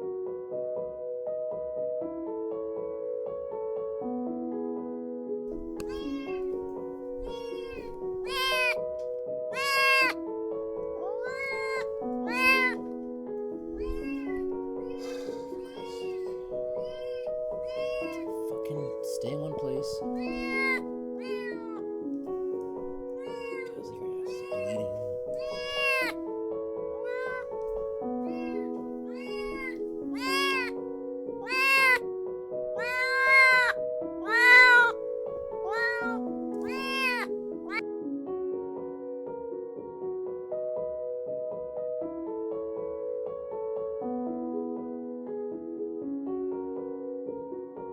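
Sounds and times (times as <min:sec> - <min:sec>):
kitten meowing: 0:05.6 - 0:08.8, 0:09.5 - 0:10.2, 0:11.0 - 0:12.8, 0:13.7 - 0:21.9, 0:22.8 - 0:26.2, 0:27.0 - 0:30.8, 0:31.4 - 0:32.0, 0:32.8 - 0:37.8.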